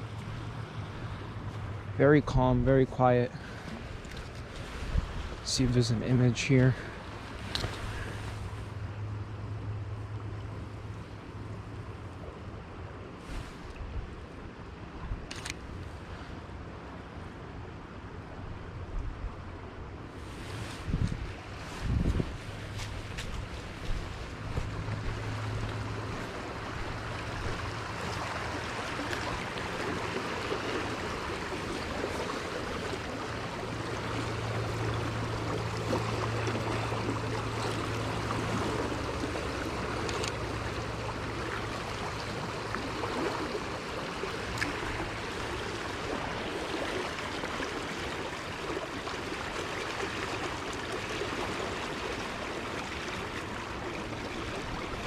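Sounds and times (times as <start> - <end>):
stream water rushing: 0.0 - 55.0.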